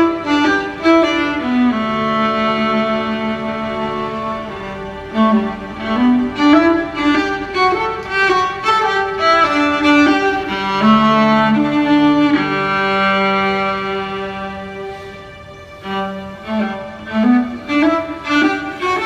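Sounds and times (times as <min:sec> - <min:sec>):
cello: 0:00.0 - 0:19.0
violin melody: 0:00.0 - 0:19.0.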